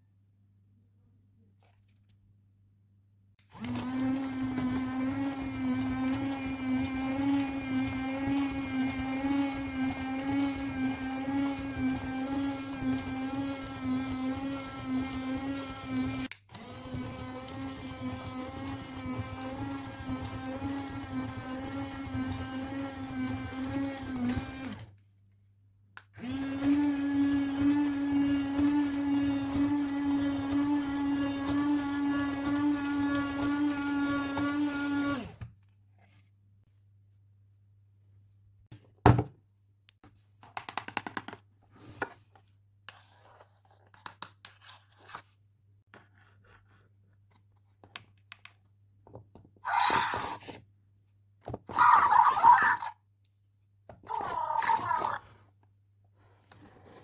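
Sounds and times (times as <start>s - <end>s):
small electric motor whirring: 26.2s - 35.4s.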